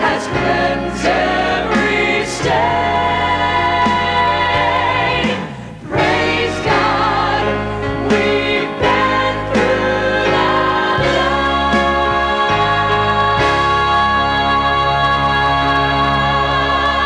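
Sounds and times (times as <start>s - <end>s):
gospel choir singing: 0.0s - 17.0s
instrumental accompaniment: 0.0s - 17.0s.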